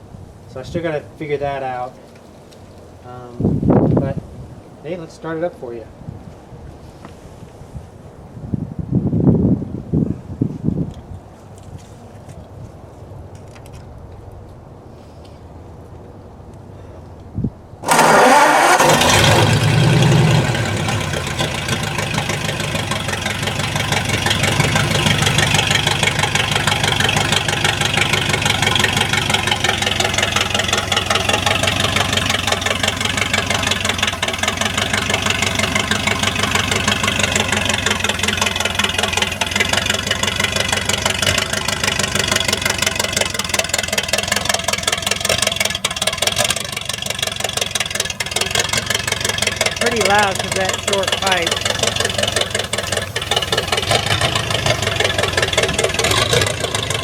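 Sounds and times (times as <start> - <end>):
engine idling roughly: 17.8 - 57.0.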